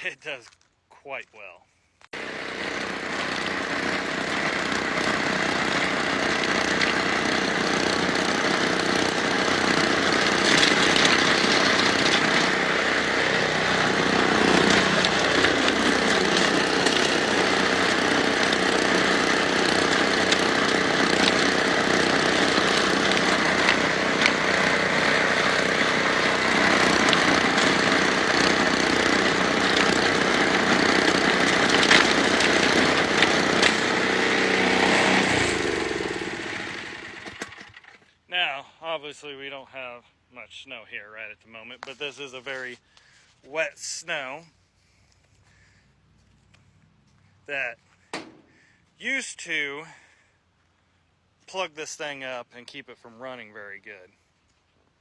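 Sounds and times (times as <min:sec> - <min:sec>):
snowblower engine running: 0:02.2 - 0:38.0.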